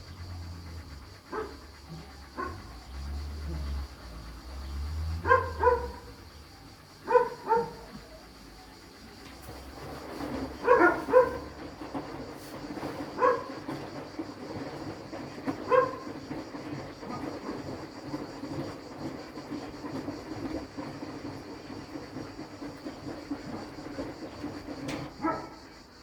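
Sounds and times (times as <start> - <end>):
washing machine running: 0.0 - 26.0
dog barking: 1.3 - 2.7, 5.2 - 6.2, 7.0 - 8.1, 10.3 - 11.7, 13.1 - 13.8, 15.6 - 16.2, 25.1 - 25.6.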